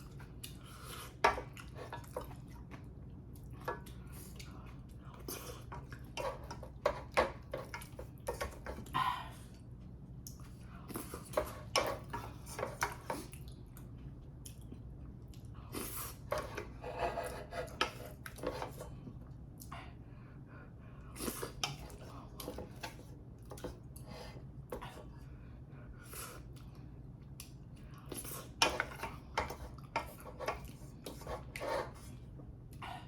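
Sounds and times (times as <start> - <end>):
soft eating sounds: 0.0 - 33.0.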